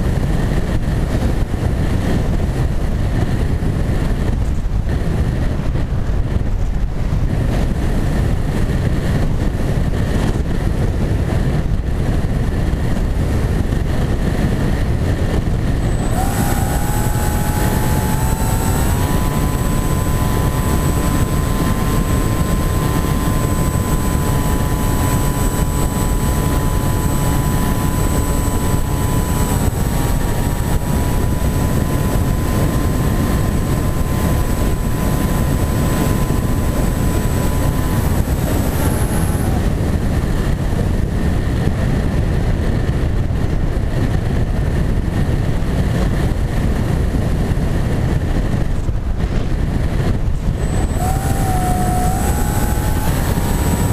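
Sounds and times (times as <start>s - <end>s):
model motor and propeller whining: 0.0s - 53.9s
wind rushing: 0.0s - 53.9s.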